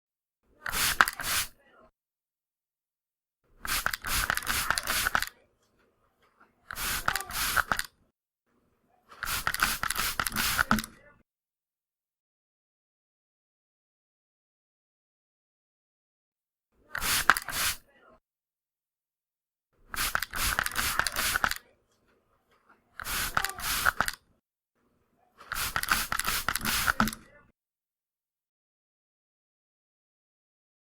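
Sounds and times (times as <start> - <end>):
spray bottle squirting: 0.6 - 1.6, 3.6 - 5.3, 6.6 - 7.9, 9.1 - 10.9, 16.9 - 17.8, 19.9 - 21.6, 22.9 - 24.2, 25.4 - 27.2.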